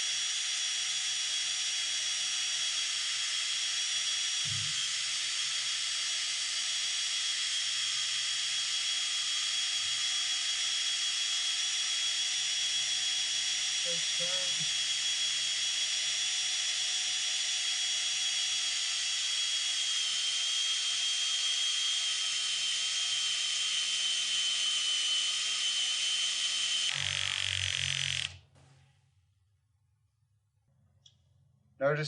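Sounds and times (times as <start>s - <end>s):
drill motor whining: 0.0s - 28.4s
low rattling of slipping drill: 17.4s - 28.4s.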